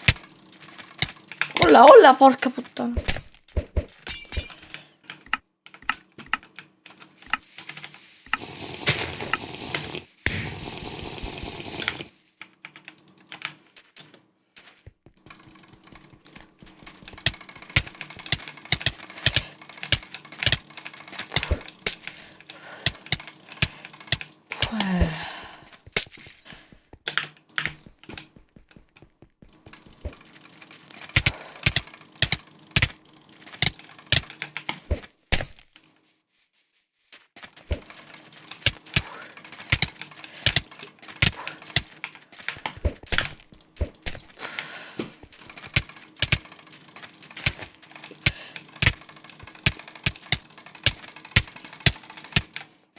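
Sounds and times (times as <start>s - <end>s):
keyboard keys clicking: 15.3s - 24.8s, 29.7s - 34.8s, 45.5s - 52.7s.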